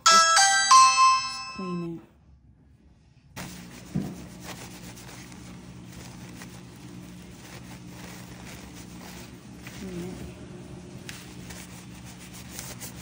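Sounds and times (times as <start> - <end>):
steady low hum: 1.1 - 13.0
rubbing as surface is wiped: 3.4 - 10.1, 11.1 - 13.0.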